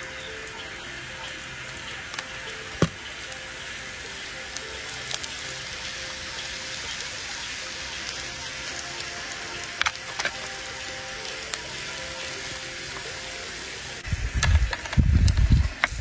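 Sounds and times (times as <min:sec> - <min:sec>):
faint background music: 0:00.0 - 0:14.8
steady hiss: 0:00.0 - 0:16.0
sharp knock: 0:02.8 - 0:03.0.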